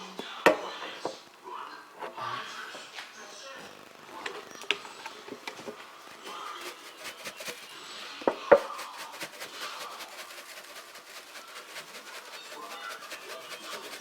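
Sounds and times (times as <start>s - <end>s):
faint clicking and rubbing: 2.0s - 14.0s
cookware knocking: 8.2s - 8.9s.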